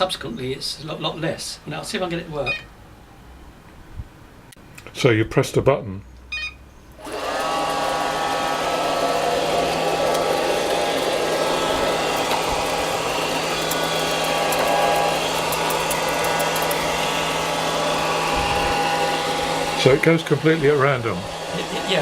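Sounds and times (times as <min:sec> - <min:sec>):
robot vacuum beep: 0:02.4 - 0:02.7, 0:06.3 - 0:06.6
robot vacuum motor whirring: 0:07.0 - 0:22.0.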